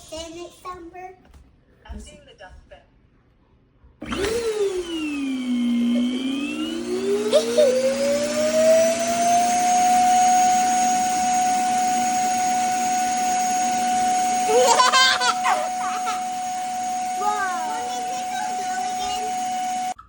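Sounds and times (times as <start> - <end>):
suction motor whine: 4.0 - 20.0.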